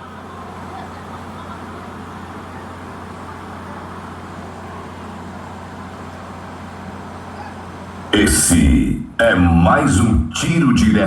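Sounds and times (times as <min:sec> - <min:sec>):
low electrical hum: 0:03.6 - 0:11.0.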